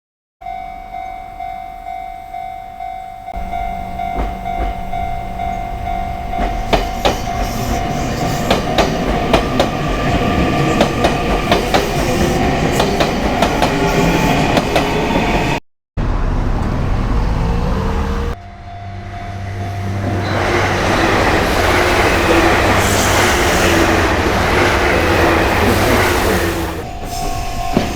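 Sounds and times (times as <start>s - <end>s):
level crossing alarm ringing: 0.4s - 14.6s, 18.4s - 27.9s
train wheels clicking over rail joints: 3.4s - 15.4s, 19.6s - 27.9s.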